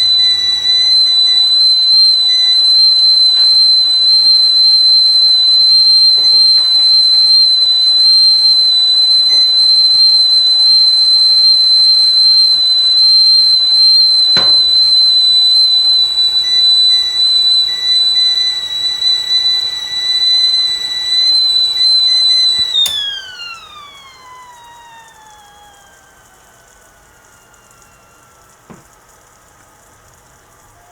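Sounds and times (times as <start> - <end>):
tea kettle whistling: 0.0 - 30.9
kettle click: 14.3 - 15.2, 22.8 - 24.1, 28.7 - 28.9
soft sizzle: 22.8 - 30.9.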